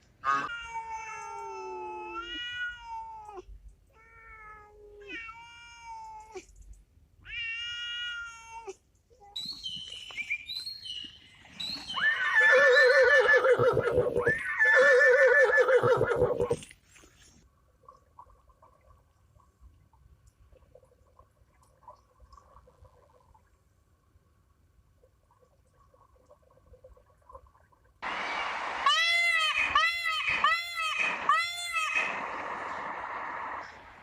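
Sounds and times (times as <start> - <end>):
cat meowing: 0.4 - 3.4, 4.0 - 6.4, 7.3 - 8.8
cat yowling: 0.5 - 3.4, 7.3 - 8.8.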